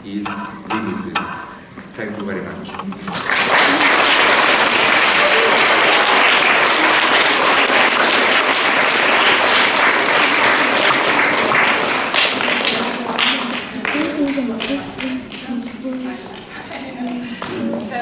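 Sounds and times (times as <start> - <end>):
audience applauding: 3.1 - 15.2.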